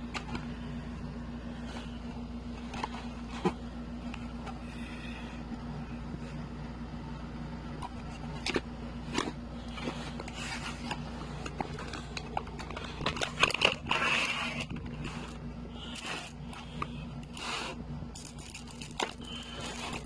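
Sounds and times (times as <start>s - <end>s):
steady low hum: 0.0s - 20.0s
packaging rustle: 8.1s - 20.0s.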